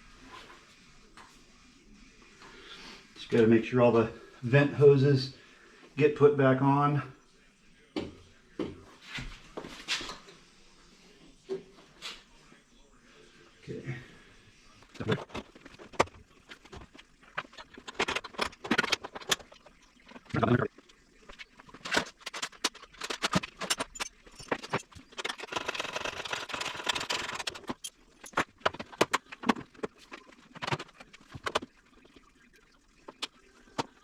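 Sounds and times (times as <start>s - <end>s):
clicks knocks and rattles of tools: 15.1s - 20.3s, 21.7s - 31.7s.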